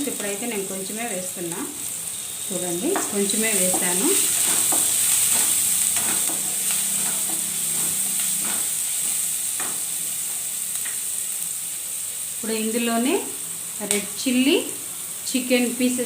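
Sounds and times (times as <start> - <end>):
vegetables sizzling in hot oil: 0.0 - 16.0
spatula scraping pan: 2.3 - 9.9.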